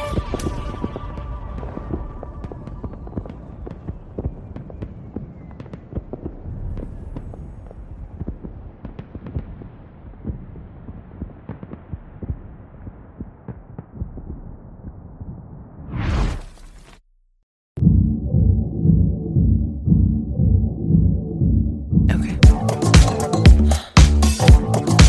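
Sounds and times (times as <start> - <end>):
low rumble: 17.8 - 22.6.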